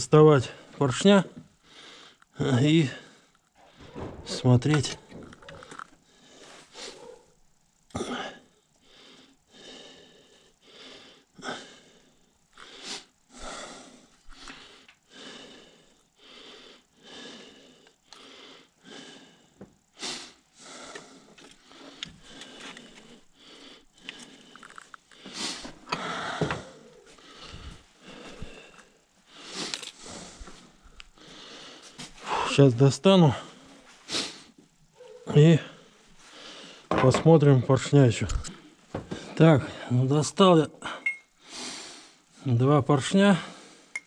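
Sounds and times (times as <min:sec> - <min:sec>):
person breathing hard wheezily: 0:01.6 - 0:02.2, 0:08.0 - 0:32.6, 0:33.4 - 0:34.6, 0:35.8 - 0:36.9, 0:40.8 - 0:42.3.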